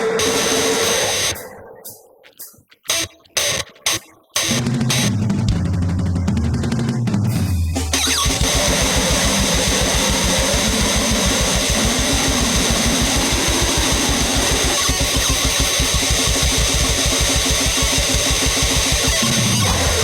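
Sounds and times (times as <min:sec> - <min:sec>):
distorted noise and guitar: 0:00.0 - 0:07.2, 0:07.8 - 0:20.0
fast pounding drums: 0:04.5 - 0:20.0.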